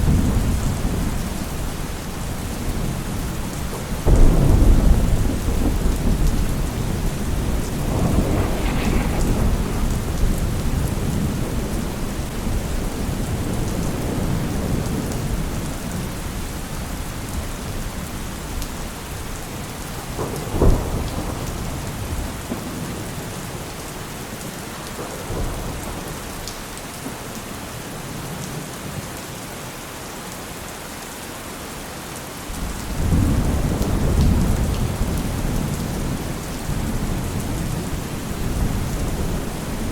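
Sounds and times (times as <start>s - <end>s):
heavy rain: 0.0s - 39.9s
sharp thunderclap: 4.0s - 15.4s, 20.1s - 22.9s
thunder rumbling: 4.0s - 15.6s.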